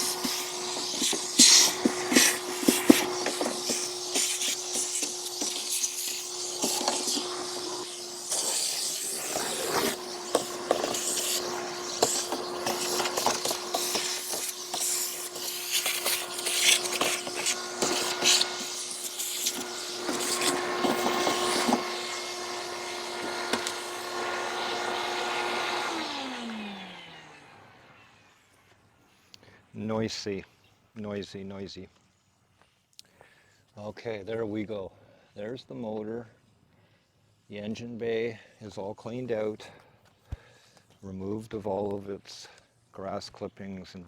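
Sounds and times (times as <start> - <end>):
small electric motor running: 0.0 - 28.5.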